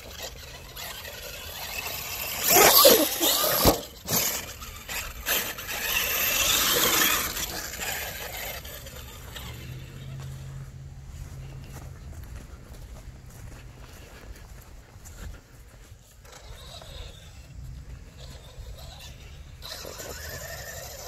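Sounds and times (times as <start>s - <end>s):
rc truck motor whining: 0.0s - 11.8s, 15.8s - 21.0s
chassis and tyres hitting ground: 0.7s - 8.9s.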